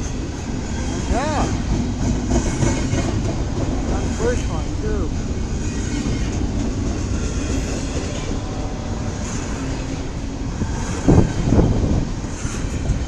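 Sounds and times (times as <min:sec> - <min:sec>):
freight train wheels rumbling on rail: 0:00.0 - 0:13.0
train car bump: 0:01.4 - 0:04.4.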